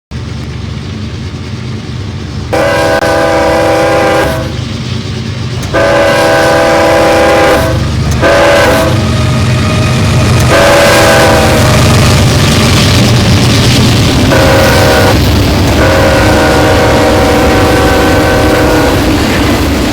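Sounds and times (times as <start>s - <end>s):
locomotive engine rumble: 0.1s - 19.9s
locomotive air horn blasts: 2.5s - 4.6s, 5.6s - 9.0s, 10.4s - 11.9s, 14.3s - 19.0s.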